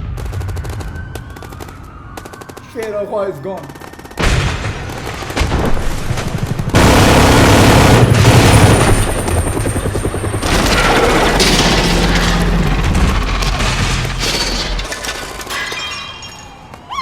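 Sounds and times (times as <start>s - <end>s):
rapid machine-gun fire: 3.6s - 14.8s
loud explosion with rumble: 4.2s - 14.8s.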